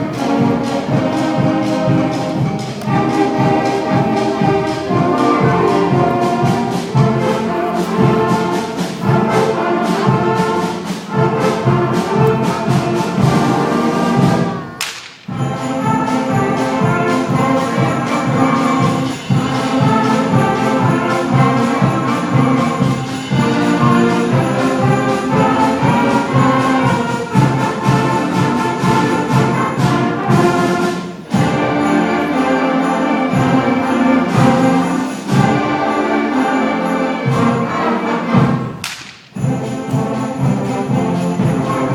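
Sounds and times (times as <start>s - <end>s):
school band playing brass: 0.0s - 41.9s
sleigh bells jingling: 0.2s - 41.9s
sharp crack: 14.8s - 15.3s, 38.8s - 39.4s.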